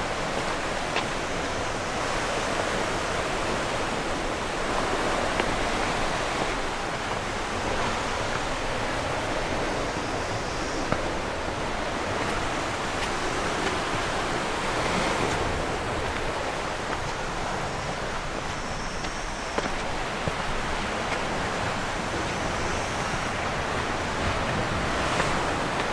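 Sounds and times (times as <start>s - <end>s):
sea waves washing onto shore: 0.0s - 25.9s.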